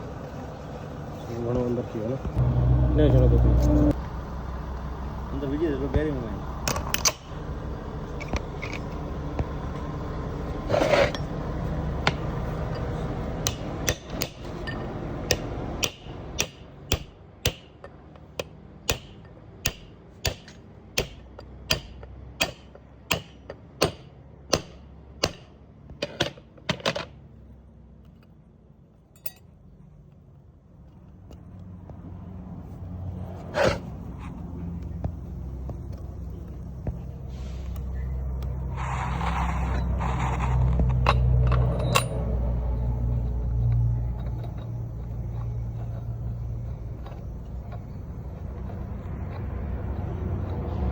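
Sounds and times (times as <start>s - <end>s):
low steady hum: 0.0s - 31.9s, 33.9s - 50.9s
hammer striking metal: 12.0s - 25.6s.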